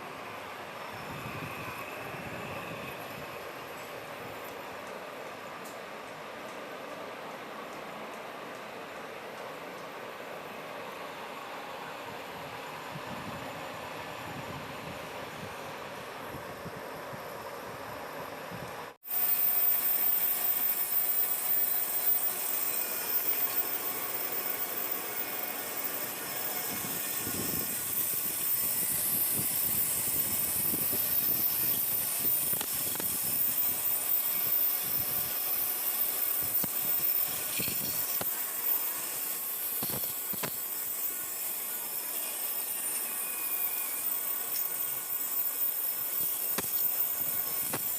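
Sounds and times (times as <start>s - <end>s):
lathe cutting metal: 19.1s - 47.9s.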